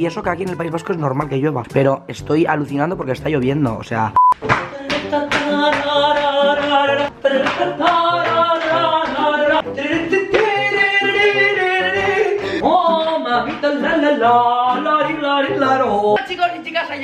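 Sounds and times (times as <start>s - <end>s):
music: 0.0s - 17.0s
person singing long notes: 4.6s - 16.2s.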